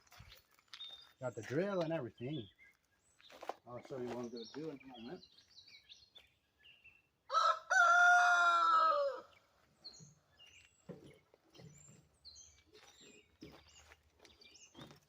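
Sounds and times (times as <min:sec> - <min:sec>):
rooster crowing: 0:07.3 - 0:09.3.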